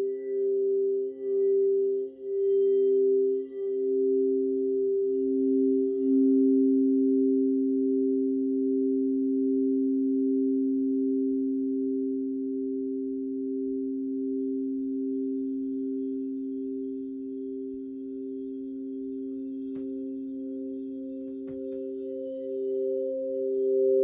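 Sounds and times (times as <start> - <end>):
crystal singing bowls ringing: 0.0 - 9.0, 13.7 - 24.0.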